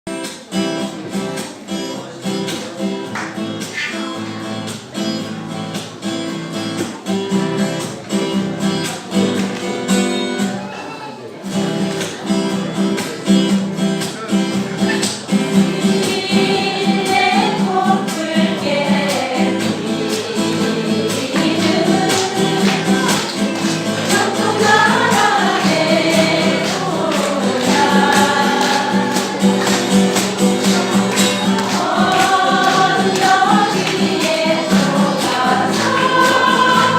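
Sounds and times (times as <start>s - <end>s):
strummed string instruments: 11.5s - 36.9s
group singing: 15.3s - 36.9s.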